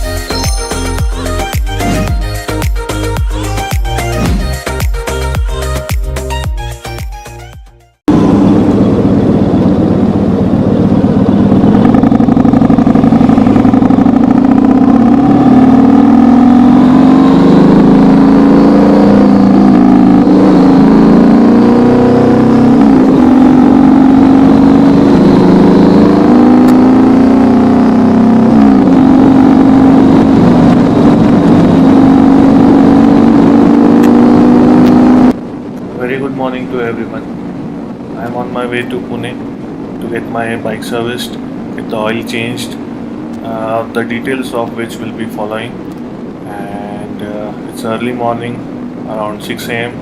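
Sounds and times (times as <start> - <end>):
motorcycle engine running loud: 8.1 - 38.9.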